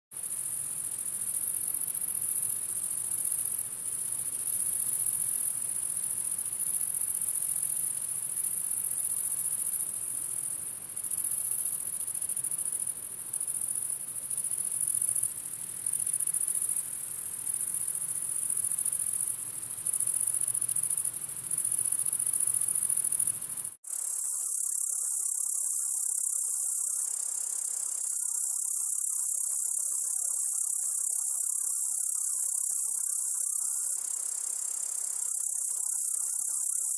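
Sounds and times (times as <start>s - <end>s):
grasshoppers stridulating: 0.2s - 26.9s
steady high insect buzz: 0.2s - 36.9s.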